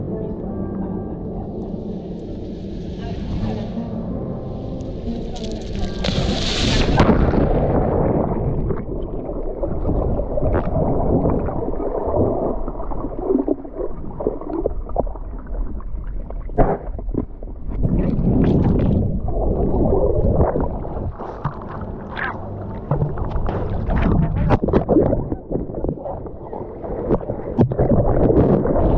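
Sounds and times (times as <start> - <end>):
underwater water and bubbles gurgling: 0.0 - 28.9
bright rush: 1.8 - 7.4.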